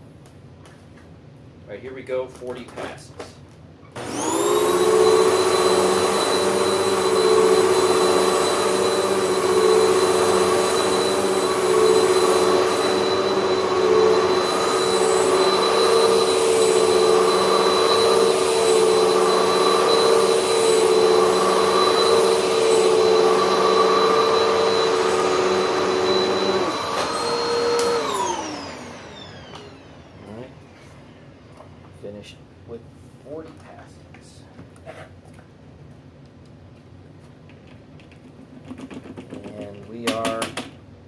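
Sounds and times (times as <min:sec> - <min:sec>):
vacuum cleaner on carpet: 0:04.0 - 0:30.5.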